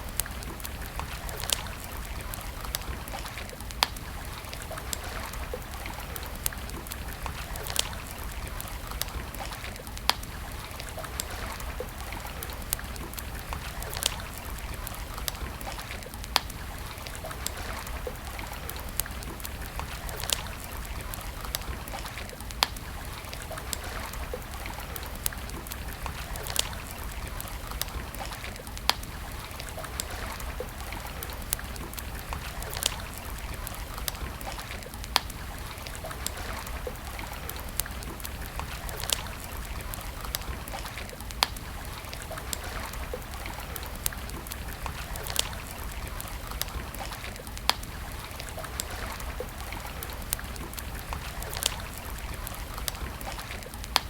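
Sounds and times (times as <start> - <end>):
campfire crackling and popping: 0.0 - 54.0
stream flowing: 0.0 - 54.0.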